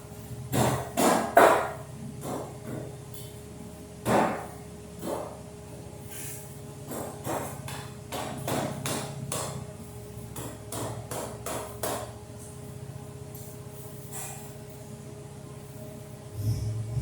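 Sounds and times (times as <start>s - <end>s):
steady low hum: 14.9s - 17.0s.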